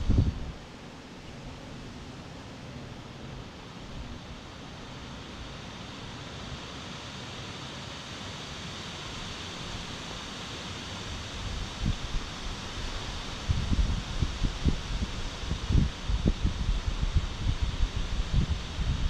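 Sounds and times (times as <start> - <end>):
wind rumble on microphone: 0.0 - 0.6, 11.3 - 19.0
wind rushing through trees: 0.0 - 19.0.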